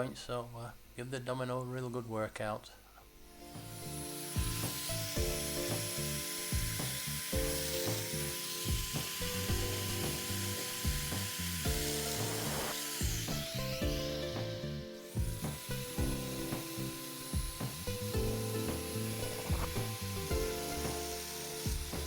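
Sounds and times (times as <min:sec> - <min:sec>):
joiner motor whine: 0:03.0 - 0:22.0
background music: 0:03.2 - 0:22.0
cutter plunging into wood: 0:03.6 - 0:22.0.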